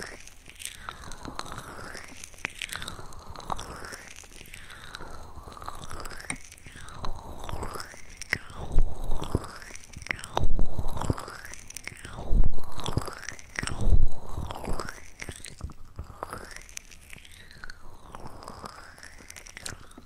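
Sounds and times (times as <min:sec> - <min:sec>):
wet mouth clicks and smacks: 0:00.0 - 0:20.0.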